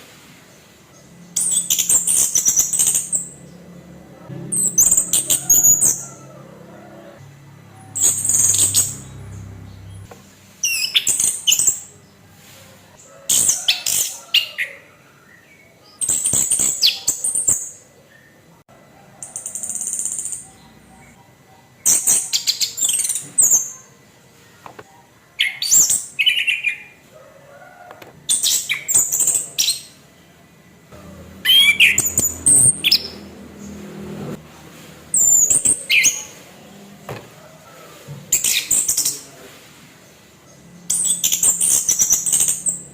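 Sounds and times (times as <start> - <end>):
thrush singing: 1.1 - 10.2, 31.0 - 34.4.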